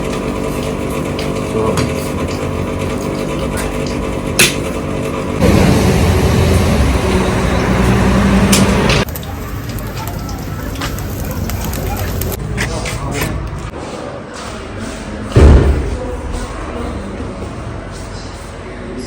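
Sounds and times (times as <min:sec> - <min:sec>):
vehicle engine running: 0:00.0 - 0:12.4.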